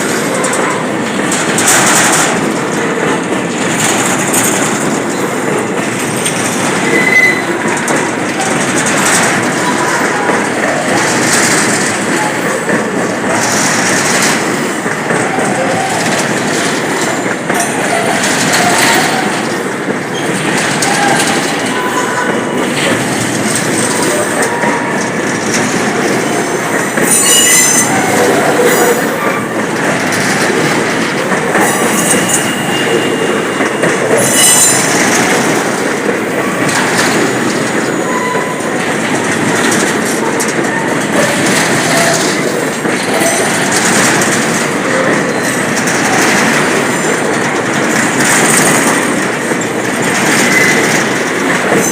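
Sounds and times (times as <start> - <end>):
train wheels rumbling on rails: 0.0 - 51.9
wheel squeals: 6.2 - 10.4, 26.1 - 29.6, 31.5 - 35.3, 37.9 - 38.8, 49.6 - 50.9.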